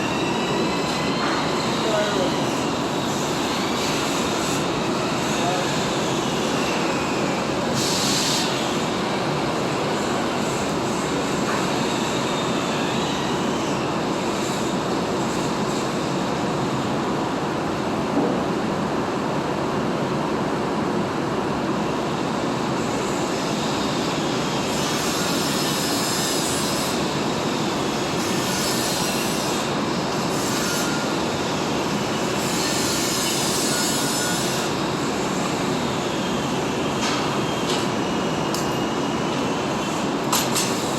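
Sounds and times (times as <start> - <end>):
welding arc hissing: 23.3 - 37.7, 39.4 - 40.9.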